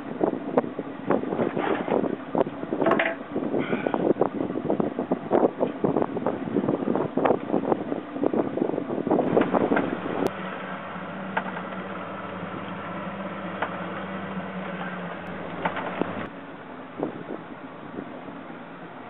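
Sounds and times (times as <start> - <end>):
wind buffeting microphone: 0.0 - 10.4, 16.9 - 18.2
boat engine running: 0.0 - 19.0.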